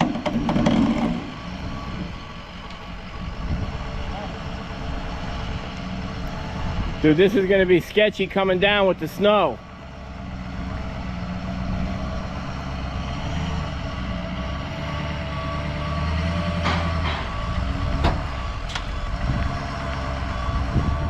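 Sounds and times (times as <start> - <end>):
sharp knocks: 0.0 - 1.3
truck engine running: 0.0 - 21.0.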